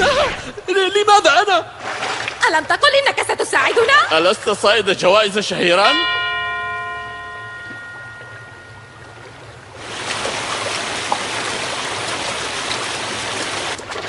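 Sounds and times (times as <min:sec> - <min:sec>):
ringing tone: 0:05.6 - 0:09.8
rush of flowing water: 0:07.3 - 0:14.0.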